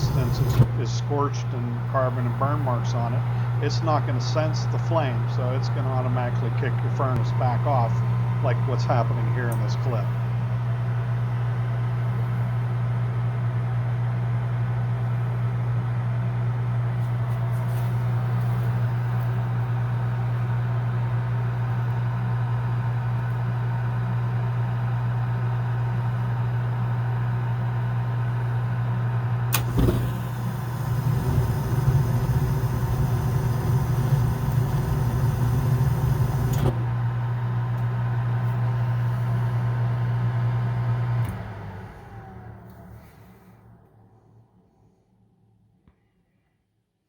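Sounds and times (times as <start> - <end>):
furnace click: 0.0 - 0.8, 29.5 - 36.8
burners igniting with rushing noise: 0.0 - 1.0, 29.5 - 36.8
furnace inducer motor humming: 0.0 - 43.4.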